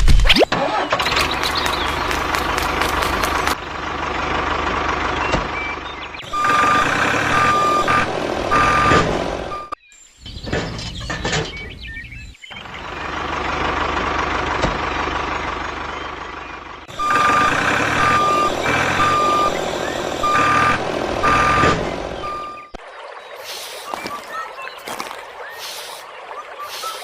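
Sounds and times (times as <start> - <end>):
truck engine running: 0.5 - 9.8, 10.9 - 22.8, 23.9 - 27.0
reversing alarm beeping: 6.2 - 9.8, 16.9 - 22.8.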